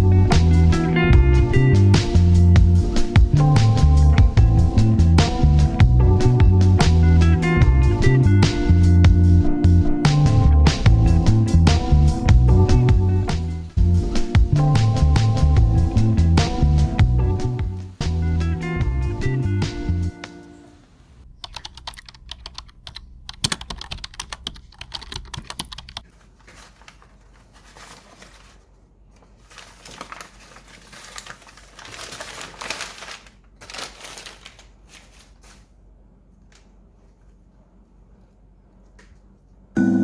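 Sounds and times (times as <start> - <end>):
background music: 0.0 - 20.8, 39.8 - 40.0
rustling of small items: 24.1 - 39.5.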